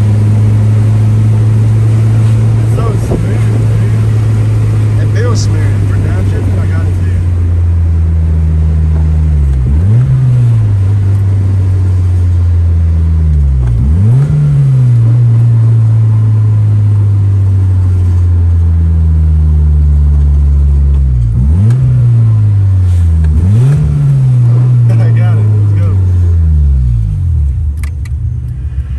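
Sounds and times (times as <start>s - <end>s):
car engine under load: 0.0s - 28.9s
gear changes: 0.0s - 28.9s.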